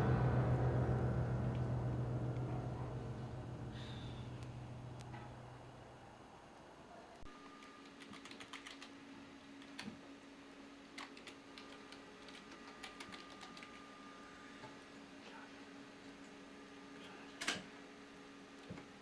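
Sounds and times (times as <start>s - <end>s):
steady low hum: 0.0s - 6.1s
typing on a keyboard: 7.6s - 9.0s, 11.0s - 13.8s.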